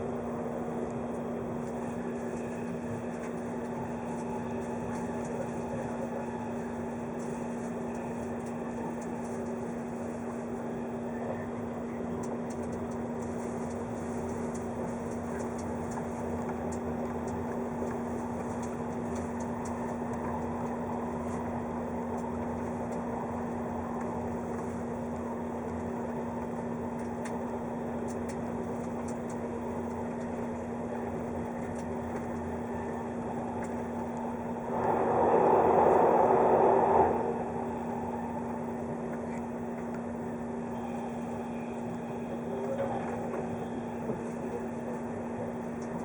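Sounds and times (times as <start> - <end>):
steady low hum: 0.0 - 46.0
electric train running: 32.6 - 40.0.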